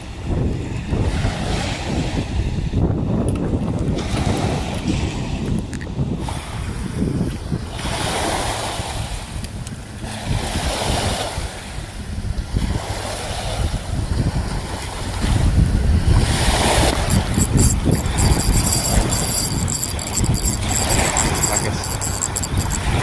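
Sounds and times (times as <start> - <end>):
wind buffeting microphone: 0.2 - 8.2.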